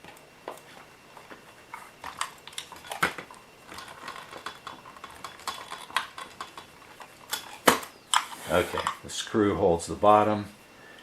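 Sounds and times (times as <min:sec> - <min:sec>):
small metal and plastic parts clicking: 0:02.0 - 0:06.7.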